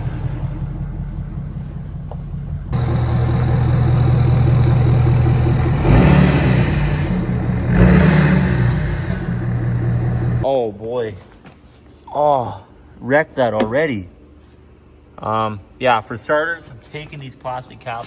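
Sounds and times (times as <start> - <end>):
diesel truck engine running: 0.0 - 10.4.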